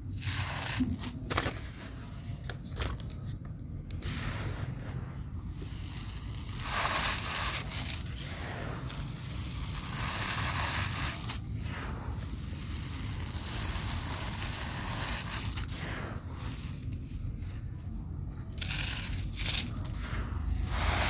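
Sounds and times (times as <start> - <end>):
dry cement crumbling and grinding: 12.6 - 21.0.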